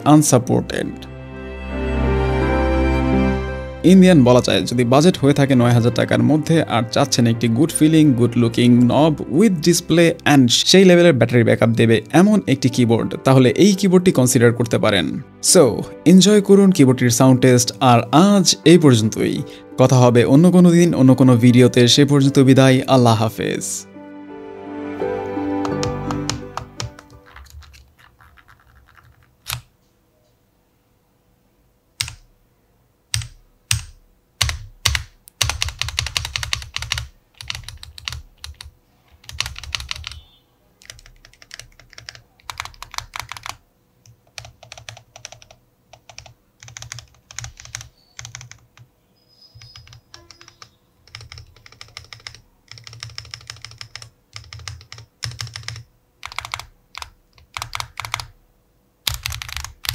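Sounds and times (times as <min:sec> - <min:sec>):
mechanical keyboard typing: 0:25.6 - 0:29.7, 0:32.0 - 0:32.3, 0:33.1 - 0:40.2, 0:40.8 - 0:48.9, 0:49.6 - 0:58.3, 0:59.0 - 0:59.9.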